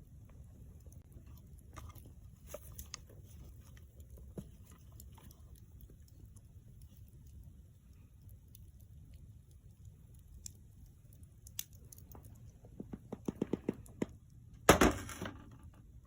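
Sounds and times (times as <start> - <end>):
campfire crackling: 0.0 - 14.7.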